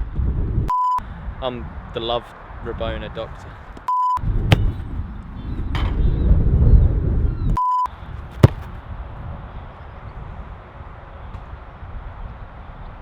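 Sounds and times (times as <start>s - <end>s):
sharp knock: 4.5s - 4.8s, 8.4s - 8.7s.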